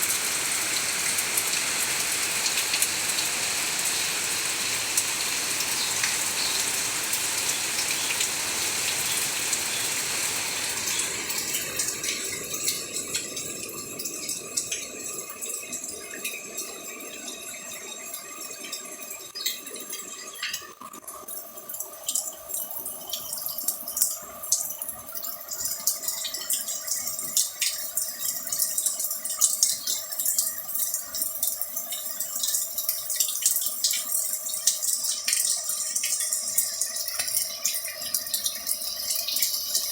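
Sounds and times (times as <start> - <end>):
heavy rain hissing: 0.0 - 13.2
rainwater dripping and splashing: 0.0 - 39.9.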